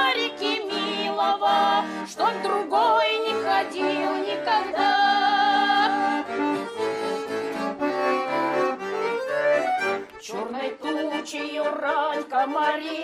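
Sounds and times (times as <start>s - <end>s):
women singing: 0.0s - 6.2s, 10.2s - 13.0s
accordion: 0.0s - 13.0s.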